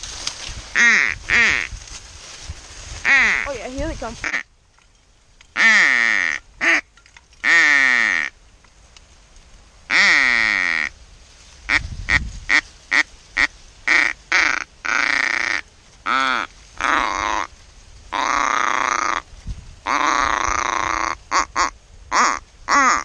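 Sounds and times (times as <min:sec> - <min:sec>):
duck call quacks: 0:00.8 - 0:01.7, 0:03.1 - 0:03.5, 0:04.2 - 0:04.5, 0:05.6 - 0:06.8, 0:07.4 - 0:08.3, 0:09.9 - 0:10.9, 0:11.7 - 0:17.5, 0:18.2 - 0:19.2, 0:19.9 - 0:23.0.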